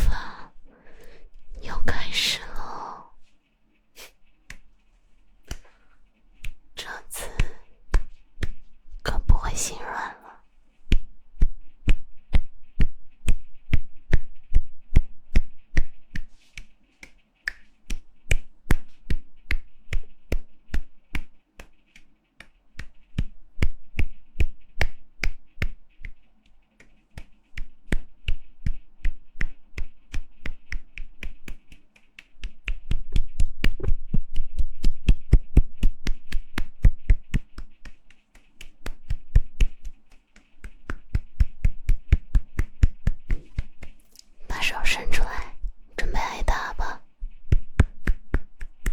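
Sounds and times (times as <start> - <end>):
hands clapping or slapping: 4.4 - 4.8, 5.4 - 5.8, 7.4 - 8.7, 15.8 - 26.2, 26.8 - 44.3, 47.5 - 48.9.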